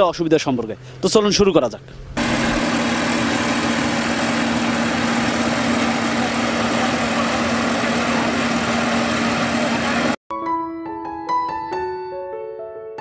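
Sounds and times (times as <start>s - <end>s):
combine harvester engine droning: 2.2s - 10.2s.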